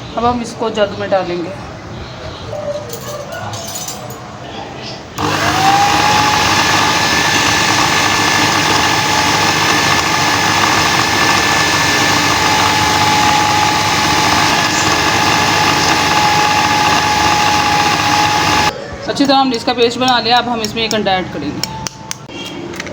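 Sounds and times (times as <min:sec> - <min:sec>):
blender motor whining: 0:05.2 - 0:18.7
thick mix churning: 0:05.2 - 0:18.7.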